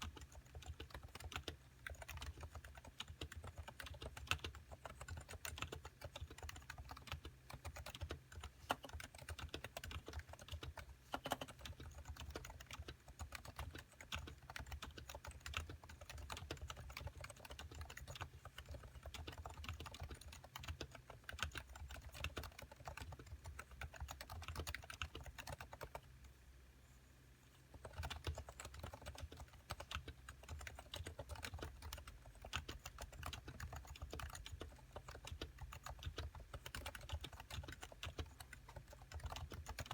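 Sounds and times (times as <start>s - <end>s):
fast typing on keyboard: 0.0s - 26.0s, 27.7s - 39.9s.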